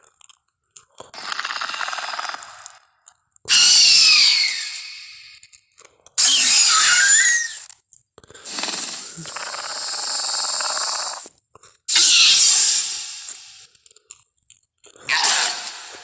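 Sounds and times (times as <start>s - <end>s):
shrill screeching call: 3.5s - 5.4s, 6.2s - 7.6s, 11.9s - 13.3s.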